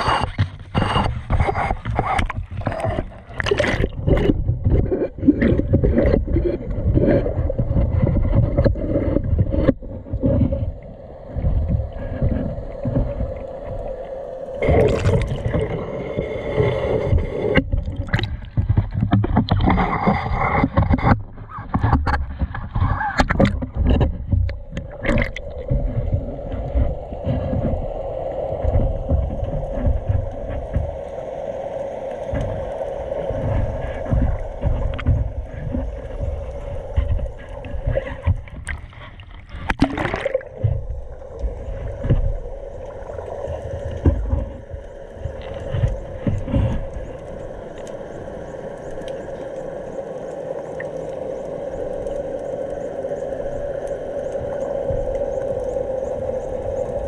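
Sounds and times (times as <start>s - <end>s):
water splashing: 0.0s - 57.0s
boat engine humming: 23.5s - 57.0s.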